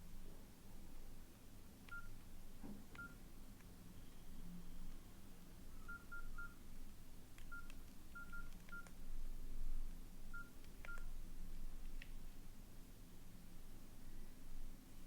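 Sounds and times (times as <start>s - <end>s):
keypad beeps: 1.9s - 2.2s, 3.0s - 3.2s, 5.8s - 6.6s, 7.4s - 8.9s, 10.3s - 11.1s.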